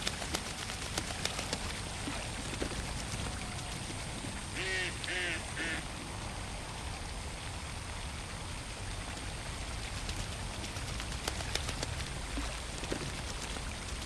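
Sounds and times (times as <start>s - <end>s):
rippling water: 0.0s - 14.0s
small water splashes: 0.0s - 14.0s
duck quacking: 4.6s - 5.8s.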